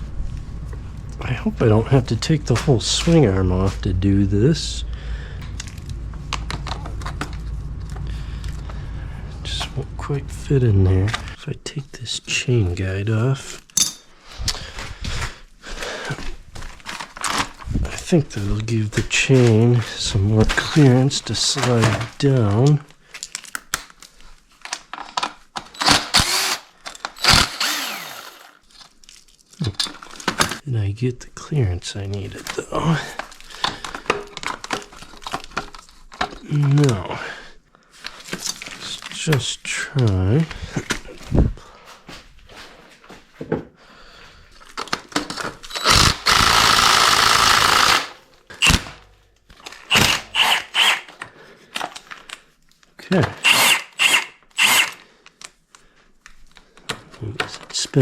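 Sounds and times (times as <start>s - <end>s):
impact wrench hammering: 25.8s - 26.6s, 27.2s - 28.5s
cordless power tool whirring: 25.8s - 28.6s, 45.7s - 48.8s, 49.9s - 51.1s, 53.4s - 55.0s.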